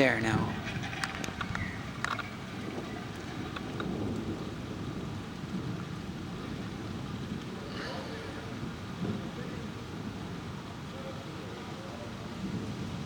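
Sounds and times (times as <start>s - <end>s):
distant thunder rumbling: 0.0s - 13.0s
faint clicks: 0.7s - 2.4s.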